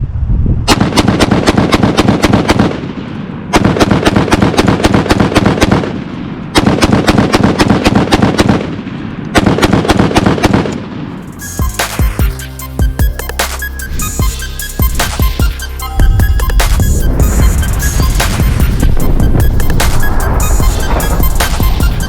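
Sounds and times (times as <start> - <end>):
rapid gunfire: 0.7 - 11.2, 16.5 - 22.0.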